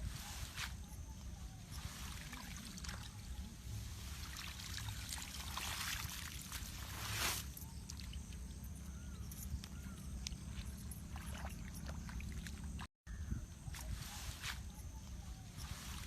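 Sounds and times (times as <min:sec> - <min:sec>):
water trickling and splashing: 0:01.2 - 0:12.9.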